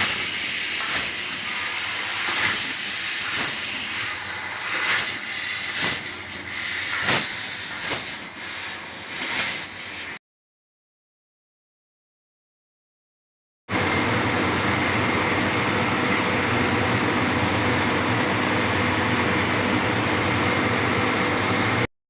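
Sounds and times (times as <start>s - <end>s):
laser cutter hissing: 0.0s - 10.2s
short gas bursts: 0.0s - 10.2s.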